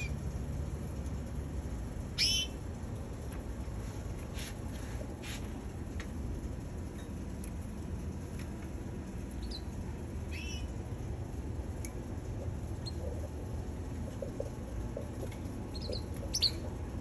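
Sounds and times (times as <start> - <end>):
canary chirping: 0.0 - 0.2, 2.1 - 2.6, 9.3 - 10.8, 12.7 - 13.2, 15.7 - 16.8.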